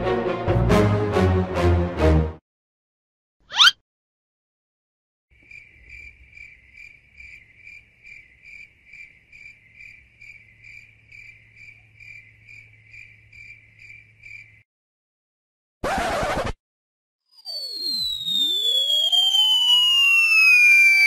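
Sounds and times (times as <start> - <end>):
cricket chirping: 5.3 - 14.6.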